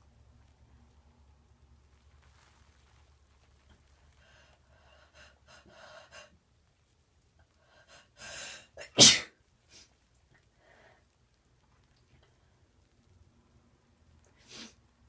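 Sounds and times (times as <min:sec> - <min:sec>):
woman gasping breaths: 0:07.6 - 0:08.8
woman sneezing: 0:08.8 - 0:09.3.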